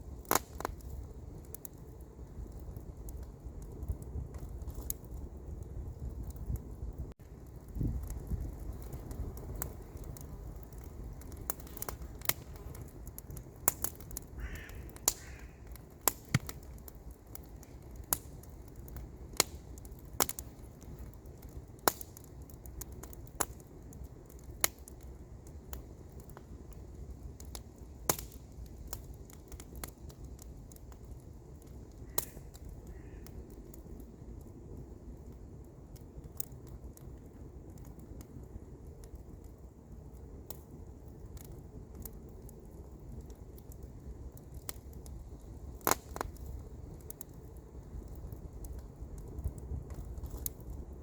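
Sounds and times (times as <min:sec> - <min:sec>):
campfire crackling and popping: 0:00.0 - 0:51.0
bird calling: 0:14.4 - 0:15.6.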